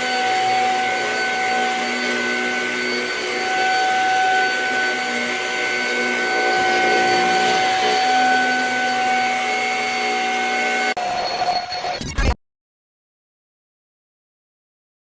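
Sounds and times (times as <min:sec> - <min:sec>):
stick vacuum running: 0:00.0 - 0:11.2.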